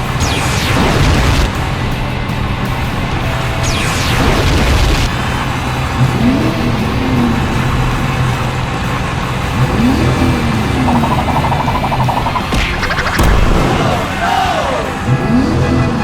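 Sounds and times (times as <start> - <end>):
background music: 0.0 - 16.0
vehicle-like hum: 0.0 - 16.0
rising swoops: 5.9 - 16.0
falling whistle: 10.9 - 15.0.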